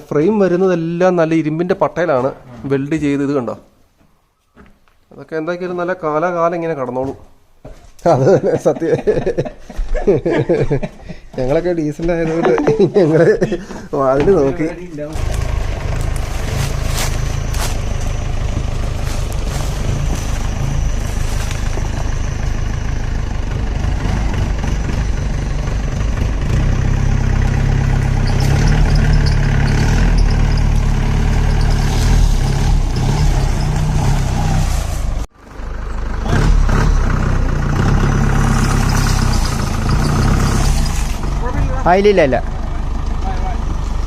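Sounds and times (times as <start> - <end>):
jeep engine running: 12.0 - 44.0.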